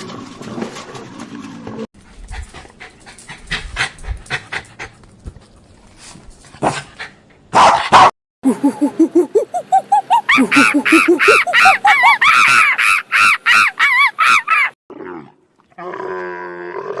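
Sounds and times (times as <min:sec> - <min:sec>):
dog panting: 0:02.0 - 0:05.6
dog barking: 0:07.5 - 0:08.1
animal high-pitched calls: 0:08.6 - 0:14.8.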